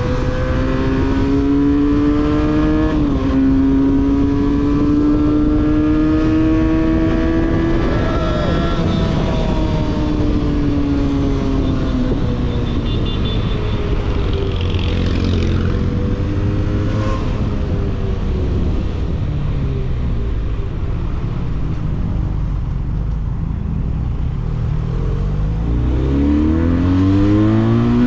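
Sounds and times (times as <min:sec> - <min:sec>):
motorcycle engine and exhaust: 0:00.0 - 0:28.0.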